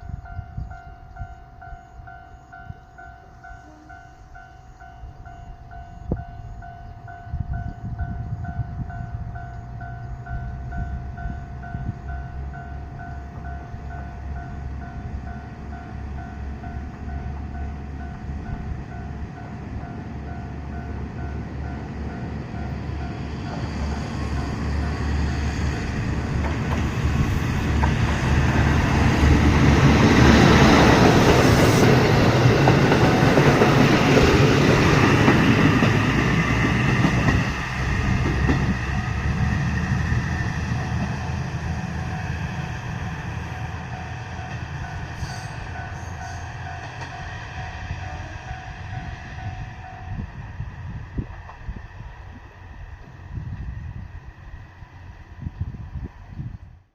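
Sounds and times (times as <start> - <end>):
diesel train engine rumbling: 0.0 - 56.9
train wheels clattering on rails: 13.3 - 50.1.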